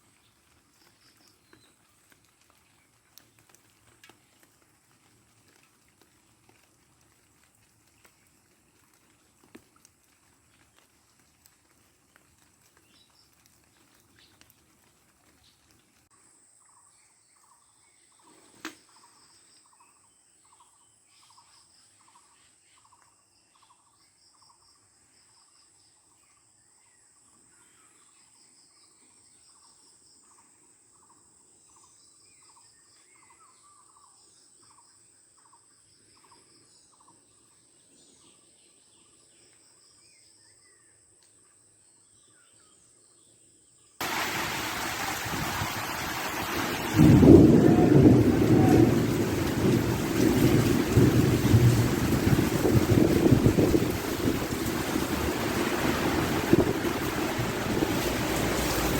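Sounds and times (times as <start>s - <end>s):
heavy rain: 44.0s - 58.9s
thunder rumbling: 44.0s - 58.9s.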